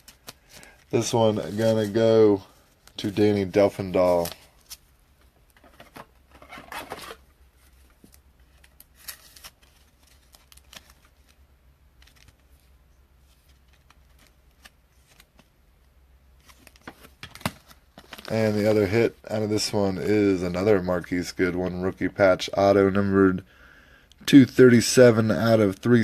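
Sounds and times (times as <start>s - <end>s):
trading cards rustling: 0.0s - 4.9s, 5.6s - 15.6s, 16.4s - 22.2s.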